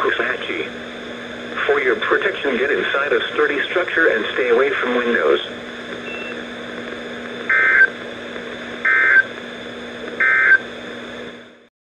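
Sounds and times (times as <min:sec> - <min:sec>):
radio hiss: 0:00.0 - 0:11.6
low steady hum: 0:00.0 - 0:11.7
warbling digital data bursts: 0:07.5 - 0:07.9.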